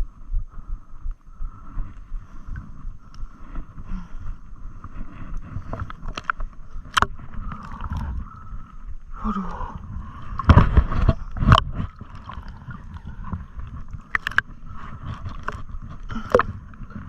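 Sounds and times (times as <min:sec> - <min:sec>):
rumbling water: 0:00.0 - 0:17.0
wind noise: 0:00.0 - 0:17.0
sharp clicks and knocks: 0:13.9 - 0:14.5.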